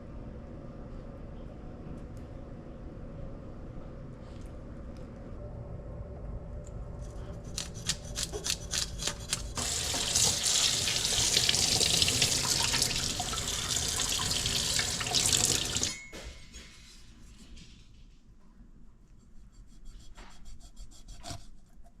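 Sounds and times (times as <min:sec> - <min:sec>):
faucet water running into sink: 0:09.6 - 0:16.0.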